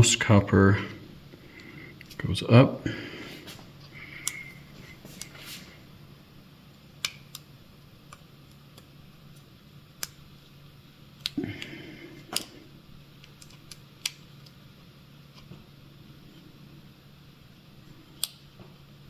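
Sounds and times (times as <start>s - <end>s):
faint steady hum: 0.0s - 19.0s
scraping shuffle: 4.8s - 5.8s.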